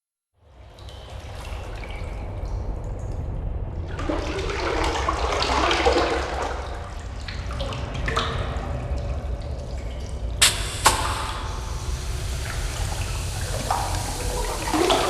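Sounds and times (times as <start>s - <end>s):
water bubbling and gurgling: 0.6s - 15.0s
steady low rumble: 1.6s - 5.6s, 6.6s - 15.0s
sharp click: 10.4s - 11.5s.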